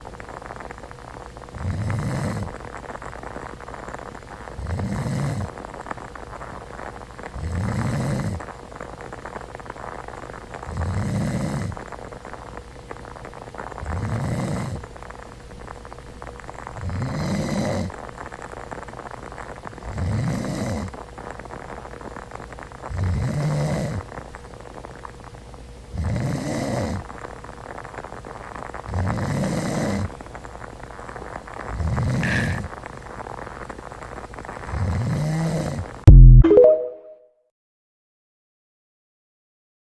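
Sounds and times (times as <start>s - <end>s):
person snoring: 1.6s - 2.5s, 4.6s - 5.5s, 16.8s - 17.9s, 31.8s - 32.7s.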